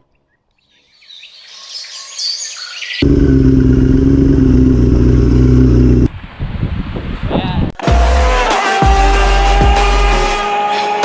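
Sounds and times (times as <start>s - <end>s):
faint bird chirps: 0.0s - 3.0s
motorcycle engine running: 3.0s - 6.1s.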